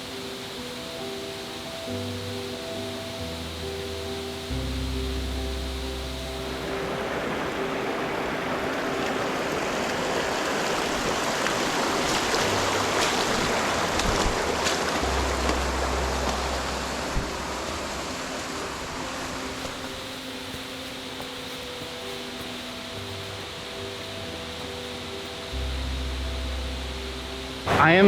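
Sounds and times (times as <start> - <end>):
rushing mountain brook: 0.0 - 28.0.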